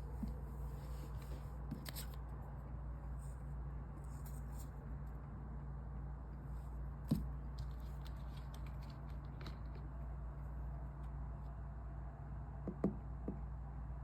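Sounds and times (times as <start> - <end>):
steady low hum: 0.0 - 14.0
hands handling small objects: 7.1 - 10.2.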